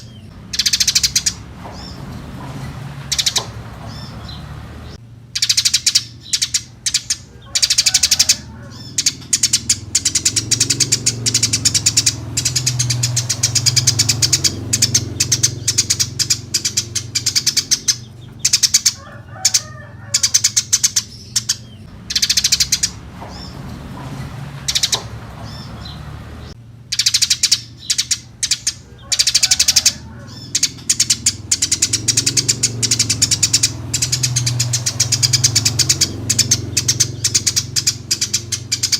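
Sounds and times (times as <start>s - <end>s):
sparrow chirping: 0.0s - 38.9s.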